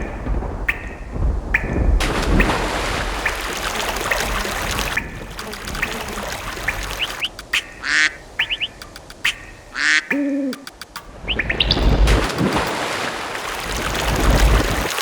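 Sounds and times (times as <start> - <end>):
rushing noise with low rumble: 0.0 - 9.8, 10.8 - 12.8
birds chirping: 0.0 - 12.8.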